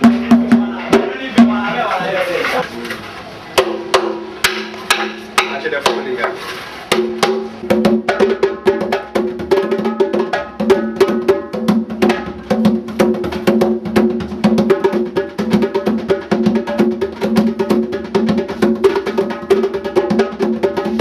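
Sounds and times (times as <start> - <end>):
percussion music: 0.0 - 21.0.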